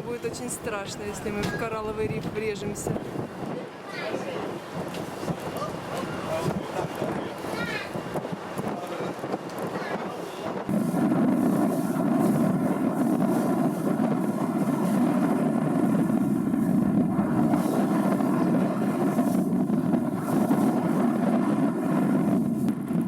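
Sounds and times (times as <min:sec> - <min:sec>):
boat engine running: 0:10.7 - 0:23.0.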